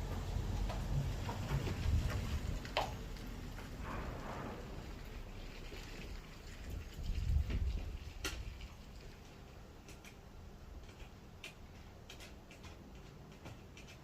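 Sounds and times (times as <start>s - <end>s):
small parts clicking and tapping: 9.2s - 14.0s.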